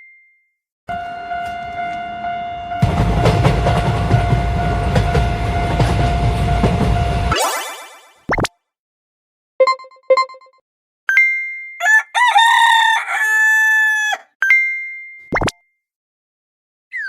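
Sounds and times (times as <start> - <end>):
crowing call like a rooster: 11.8 - 14.3.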